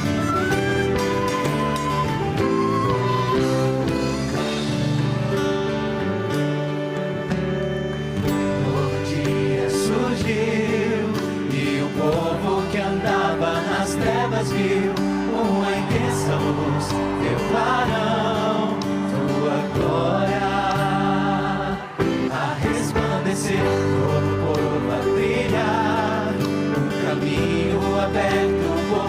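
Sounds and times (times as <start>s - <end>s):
sustained instrumental chords: 0.0s - 29.0s
voices singing together: 8.3s - 29.0s.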